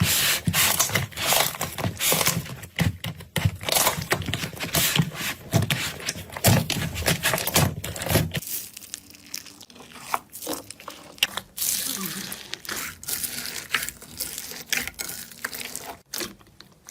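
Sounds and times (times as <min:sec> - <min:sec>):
slime crackling and popping: 0:08.4 - 0:16.9.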